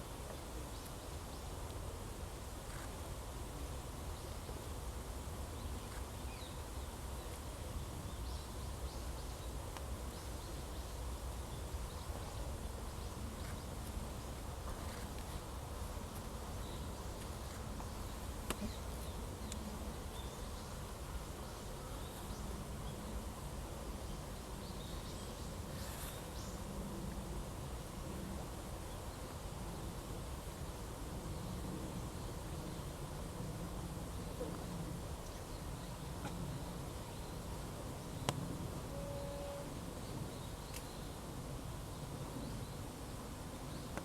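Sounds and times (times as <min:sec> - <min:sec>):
faint steady hum: 0:00.0 - 0:44.0
faint click: 0:18.4 - 0:18.8, 0:19.4 - 0:19.7, 0:40.7 - 0:41.0.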